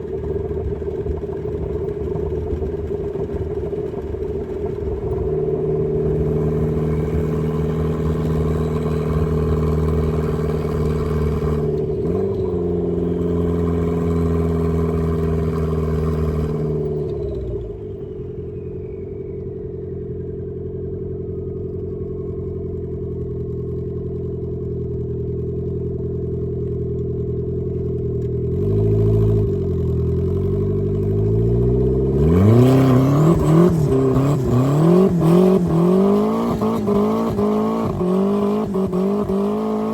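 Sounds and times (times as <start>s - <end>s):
thin turbo whine: 0.0s - 23.3s
car engine revving: 0.0s - 23.6s, 27.6s - 39.9s.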